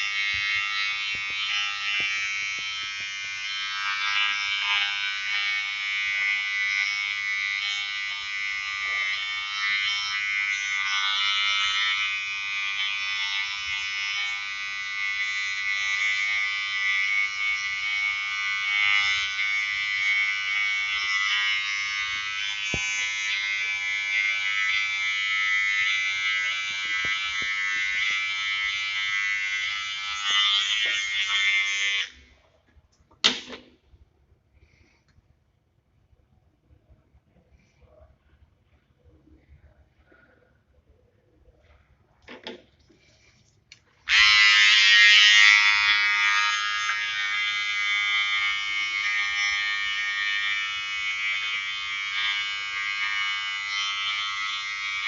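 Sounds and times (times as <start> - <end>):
electric trimmer buzzing: 0.0 - 32.3, 44.0 - 55.0.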